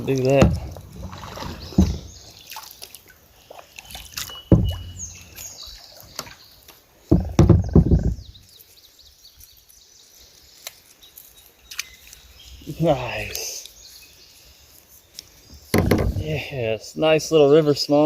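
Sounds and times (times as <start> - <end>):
water splashing against kayak: 0.0 - 6.5
sharp knock: 15.8 - 16.3.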